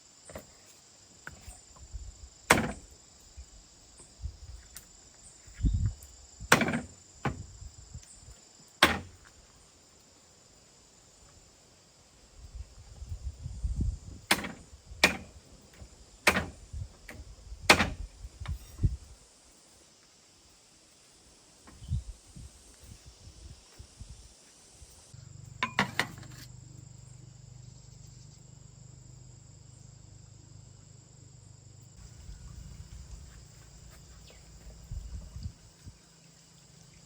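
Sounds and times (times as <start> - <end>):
insects trilling: 0.0 - 37.0
sharp knocks or chops: 2.5 - 2.8, 8.8 - 9.1, 17.7 - 18.0.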